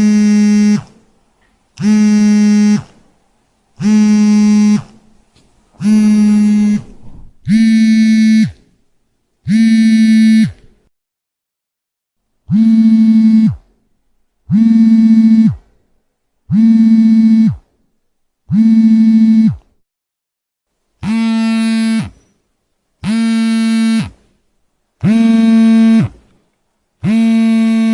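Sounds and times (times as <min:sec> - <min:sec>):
mobile phone vibrating: 0:00.0 - 0:01.0, 0:01.8 - 0:03.0, 0:03.8 - 0:05.1, 0:05.8 - 0:08.8, 0:09.4 - 0:10.8, 0:12.5 - 0:13.8, 0:14.5 - 0:15.8, 0:16.5 - 0:17.8, 0:18.5 - 0:19.8, 0:21.0 - 0:22.3, 0:23.0 - 0:24.3, 0:25.0 - 0:26.3, 0:27.0 - 0:27.9.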